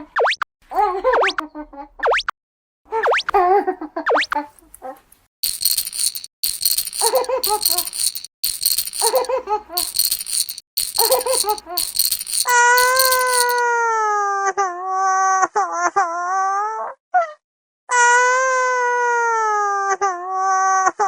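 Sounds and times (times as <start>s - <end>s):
cartoon rattling sound effect: 5.4s - 13.6s.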